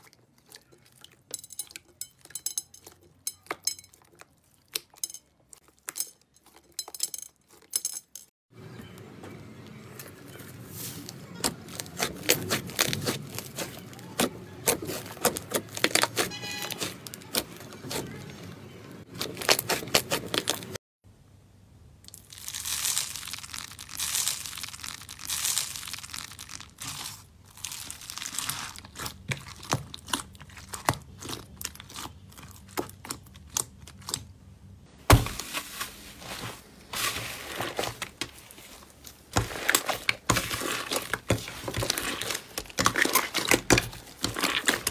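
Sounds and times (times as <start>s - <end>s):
slime crackling and popping: 11.3s - 18.2s, 22.1s - 34.2s, 39.3s - 44.9s.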